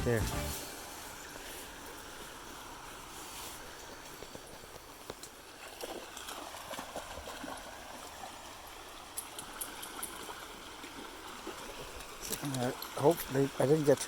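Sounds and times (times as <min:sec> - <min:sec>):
creek water running: 0:00.0 - 0:14.0
light clicks and rustles: 0:03.4 - 0:06.8, 0:09.1 - 0:10.4, 0:12.0 - 0:13.2.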